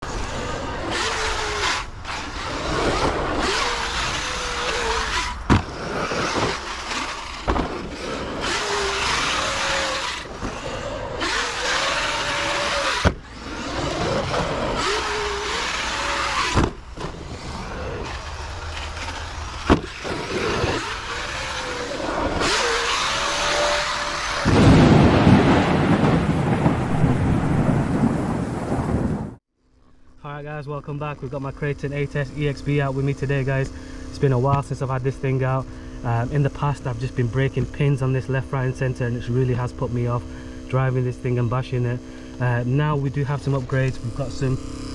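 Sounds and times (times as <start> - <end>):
rc car electric motor whining: 0.0 - 24.6, 31.2 - 44.9.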